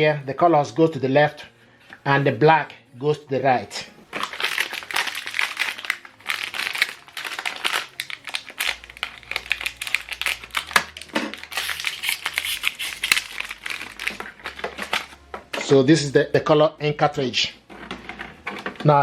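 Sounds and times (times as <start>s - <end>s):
plastic packaging crinkling and tearing: 4.0s - 15.8s, 17.7s - 19.0s.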